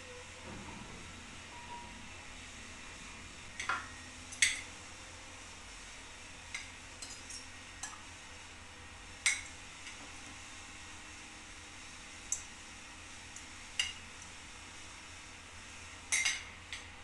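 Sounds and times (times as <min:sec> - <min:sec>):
dishes and utensils clinking: 0:07.0 - 0:08.0.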